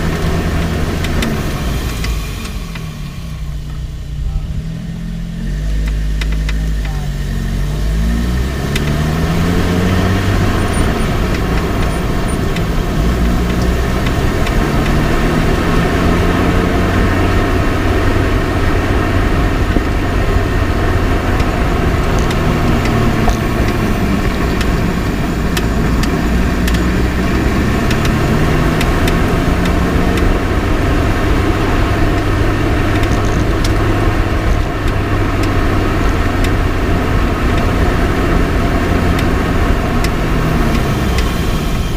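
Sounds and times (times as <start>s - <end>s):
car engine revving: 0.0s - 41.9s
road and tyre noise: 0.0s - 41.9s
sharp suspension clicks: 0.1s - 2.9s, 5.7s - 7.0s, 8.4s - 16.6s, 21.2s - 41.8s.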